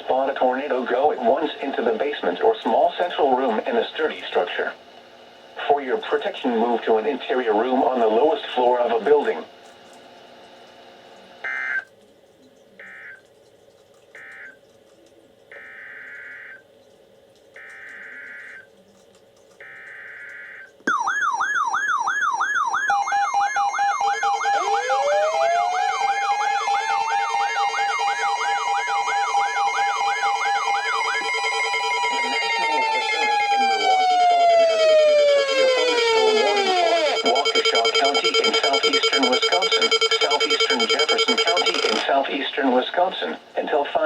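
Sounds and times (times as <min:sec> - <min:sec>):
warbling siren tones: 0:14.1 - 0:14.6, 0:17.6 - 0:18.7, 0:19.6 - 0:42.1
steady beeping tones: 0:21.9 - 0:42.2
screeching digital data tones: 0:22.8 - 0:42.2.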